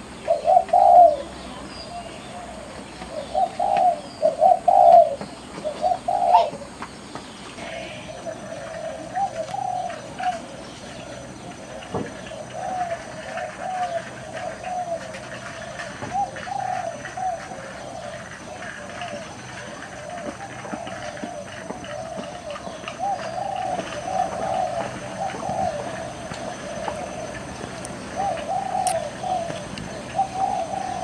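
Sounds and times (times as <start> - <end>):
doves cooing: 0.0 - 6.9, 7.5 - 31.0.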